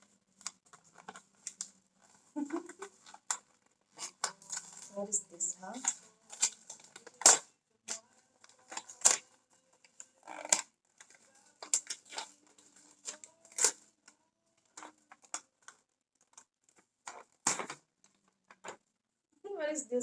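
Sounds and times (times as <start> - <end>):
gift packaging crinkling: 0.0 - 18.8.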